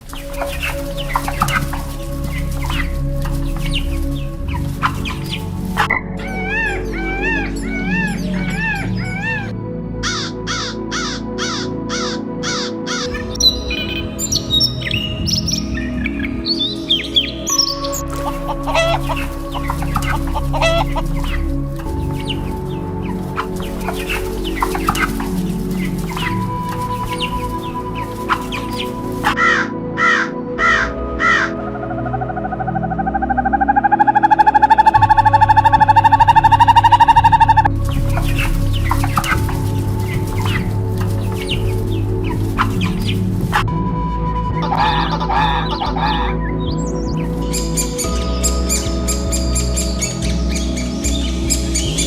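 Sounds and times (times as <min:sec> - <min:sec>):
background music: 0:00.0 - 0:52.0
bird arching calls: 0:00.1 - 0:13.2, 0:16.7 - 0:31.5, 0:33.4 - 0:43.6
bird clucking calls: 0:00.1 - 0:13.2, 0:17.5 - 0:31.5, 0:33.4 - 0:43.6.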